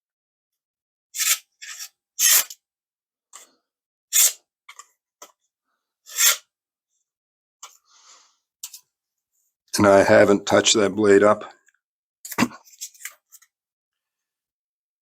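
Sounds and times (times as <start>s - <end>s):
knife slicing paper: 1.2s - 2.6s, 4.1s - 4.4s, 6.1s - 6.4s.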